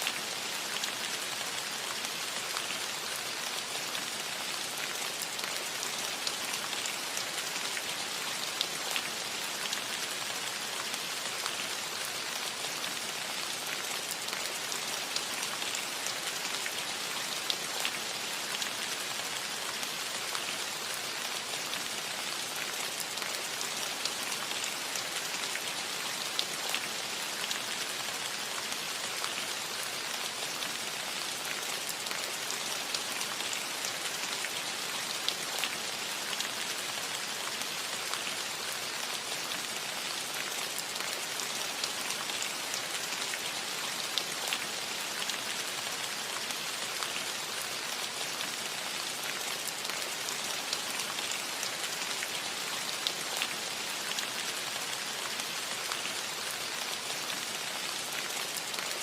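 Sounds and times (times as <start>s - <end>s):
rain on a metal roof: 0.0s - 59.0s.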